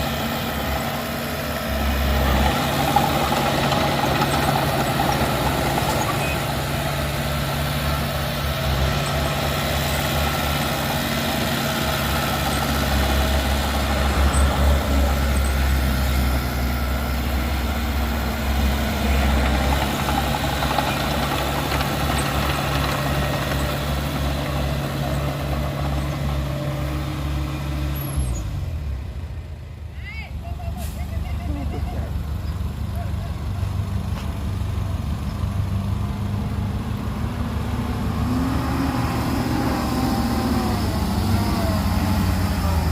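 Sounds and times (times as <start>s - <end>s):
heavy diesel engine running: 0.0s - 29.9s, 30.6s - 42.9s.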